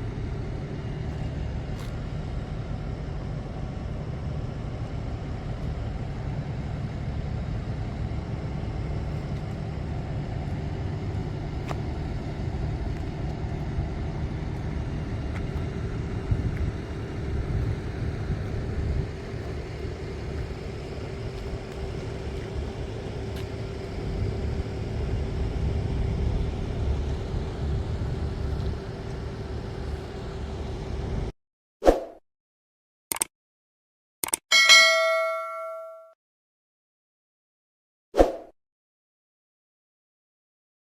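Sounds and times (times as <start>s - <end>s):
combine harvester rumble: 0.0s - 31.3s
constant hum: 0.0s - 31.3s.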